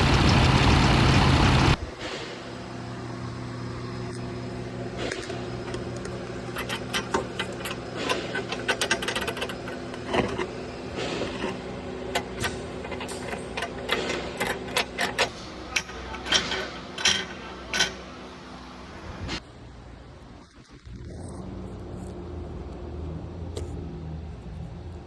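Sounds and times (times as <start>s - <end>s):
metallic clicking and clinking: 5.0s - 18.2s.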